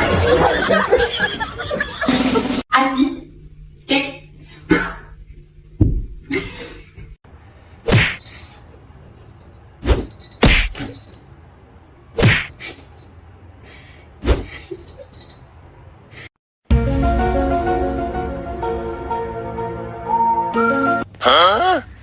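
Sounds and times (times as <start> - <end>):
thuds or knocks: 5.8 - 6.2.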